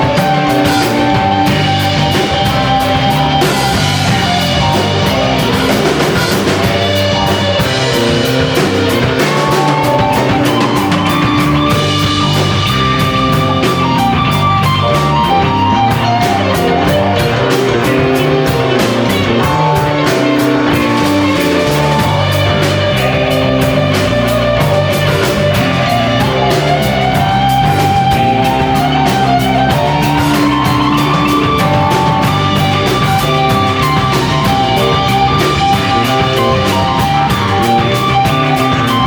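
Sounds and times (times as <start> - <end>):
drum kit beat: 0.0 - 39.0
electric guitar long notes: 0.0 - 39.0.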